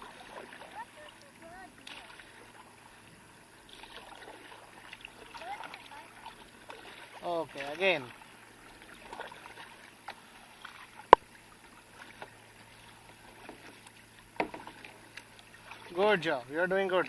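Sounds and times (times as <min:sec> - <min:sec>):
paddle strokes in water: 0:00.0 - 0:17.0
kayak knocks: 0:13.2 - 0:16.0.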